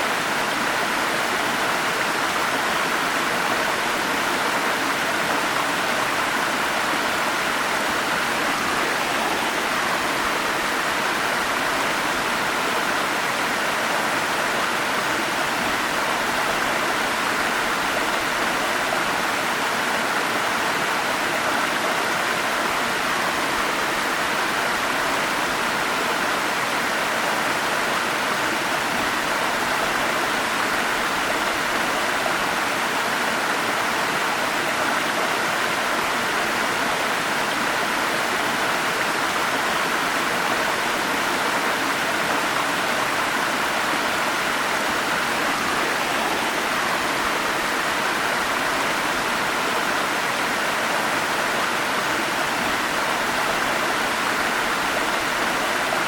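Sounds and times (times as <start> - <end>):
stream flowing: 0.0 - 56.0.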